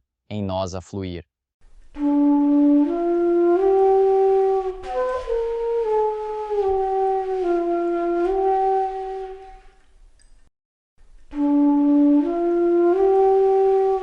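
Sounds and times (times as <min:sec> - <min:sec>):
solo flute slow melody: 0:01.8 - 0:09.9, 0:11.2 - 0:14.0.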